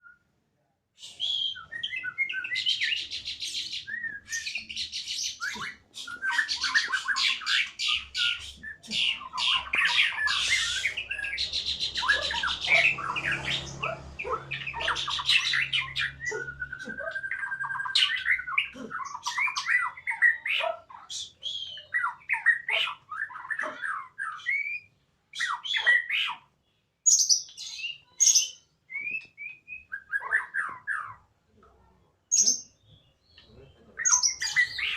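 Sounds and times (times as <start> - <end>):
songbirds singing and chattering: 1.0 - 34.9
long even bird whistle: 9.5 - 12.8.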